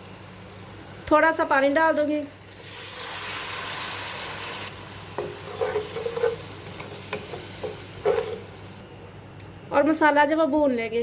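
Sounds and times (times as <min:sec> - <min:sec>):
hot oil sizzling: 0:00.0 - 0:08.8
spoon scraping in pot: 0:05.2 - 0:08.5.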